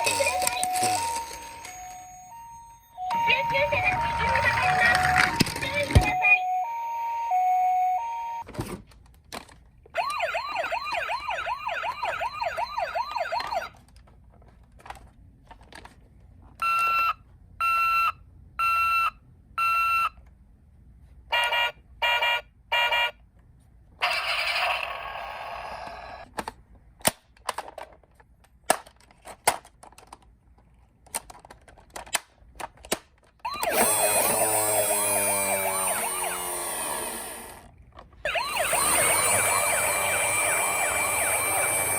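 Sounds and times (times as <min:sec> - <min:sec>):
toy siren beeps: 0:00.0 - 0:08.4, 0:16.6 - 0:20.1, 0:33.5 - 0:37.2, 0:38.3 - 0:41.9
toy siren two-tone hi-lo: 0:00.0 - 0:08.4, 0:10.0 - 0:13.7, 0:33.5 - 0:37.2, 0:38.3 - 0:41.9
toy siren wavering wail: 0:00.0 - 0:08.4, 0:10.0 - 0:13.7, 0:33.5 - 0:37.5, 0:38.2 - 0:41.9
loud siren wail sweeping: 0:03.0 - 0:08.4, 0:10.0 - 0:13.7, 0:33.5 - 0:36.7, 0:38.3 - 0:41.9.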